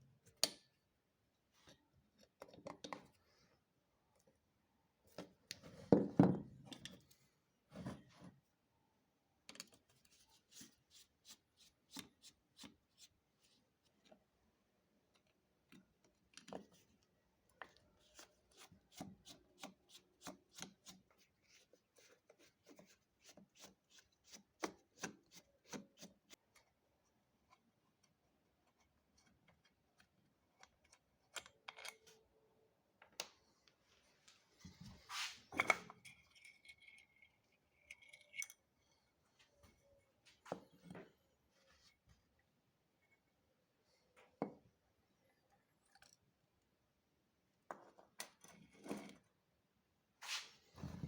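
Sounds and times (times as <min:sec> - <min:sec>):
scrape: 0:34.6 - 0:35.6, 0:50.2 - 0:51.0.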